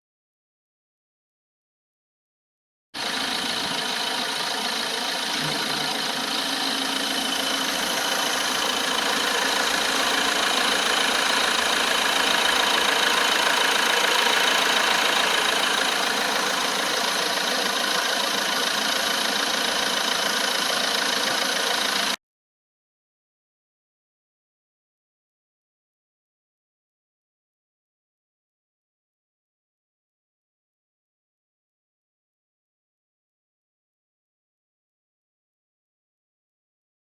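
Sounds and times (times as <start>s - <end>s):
diesel engine idling: 3.0s - 22.2s.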